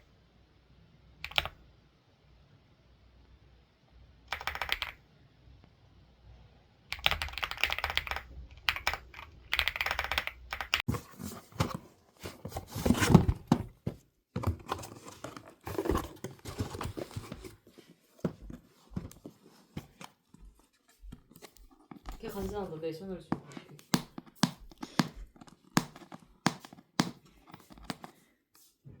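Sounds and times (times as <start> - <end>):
typing on computer keyboard: 1.2 - 1.6, 4.3 - 5.0, 6.9 - 10.8
rustling and knocking handling noise: 10.8 - 22.7, 23.3 - 28.8.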